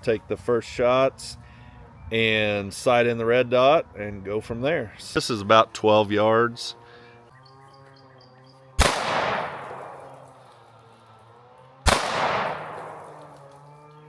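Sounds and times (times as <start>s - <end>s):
pistol shots with echo: 8.8s - 10.6s, 11.8s - 13.5s.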